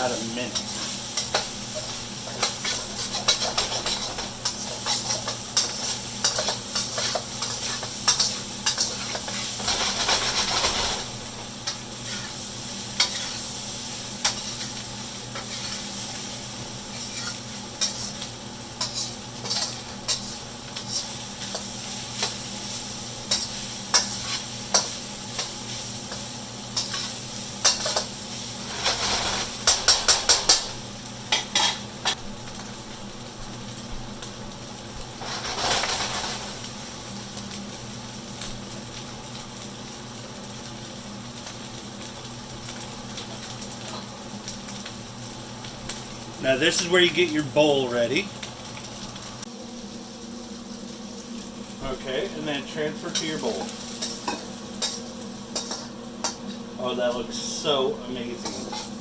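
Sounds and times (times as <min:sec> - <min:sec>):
rice sizzling in a pan: 0:00.0 - 0:59.0
utensil scraping a pan: 0:28.6 - 0:30.6, 0:35.2 - 0:36.5.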